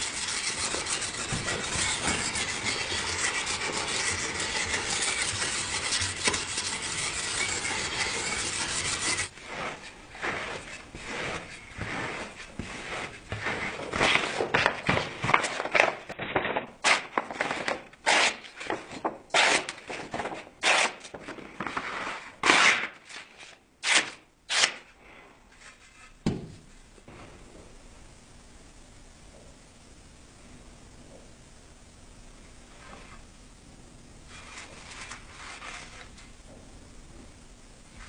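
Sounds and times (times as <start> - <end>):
abrasive scraping knife blade: 0.0 - 12.3.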